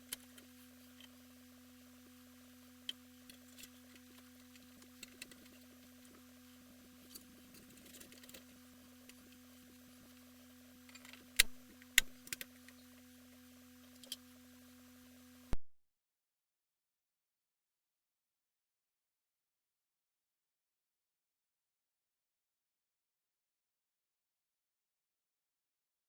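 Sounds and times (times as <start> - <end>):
low electrical hum: 0.0 - 15.6.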